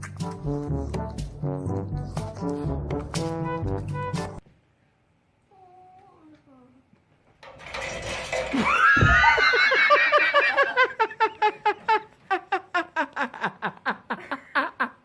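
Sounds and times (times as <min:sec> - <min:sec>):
person laughing hard: 0:08.6 - 0:15.0.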